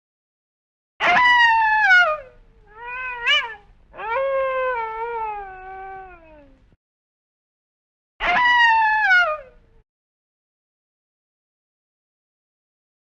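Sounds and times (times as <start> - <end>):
wolf howling: 1.0 - 6.6, 8.2 - 9.6.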